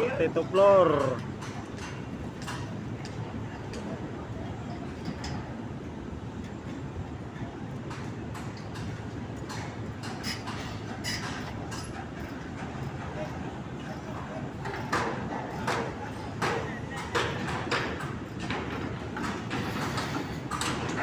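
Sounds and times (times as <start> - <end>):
heavy construction machinery rumble: 0.0 - 21.0
light knocks and clanks: 7.4 - 21.0.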